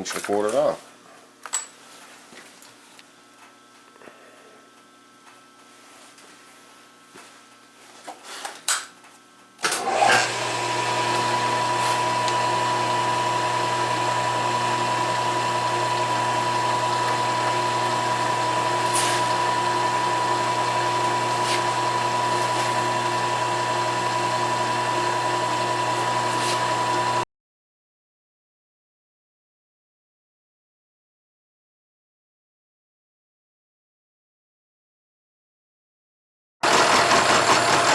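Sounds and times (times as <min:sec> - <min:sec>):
milling machine spindle whine: 0:09.8 - 0:27.2, 0:36.6 - 0:37.9.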